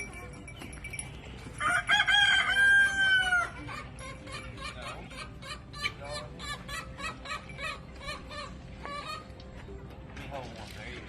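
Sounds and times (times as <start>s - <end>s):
rooster crowing: 1.6s - 3.6s
chickens clucking: 3.1s - 9.9s.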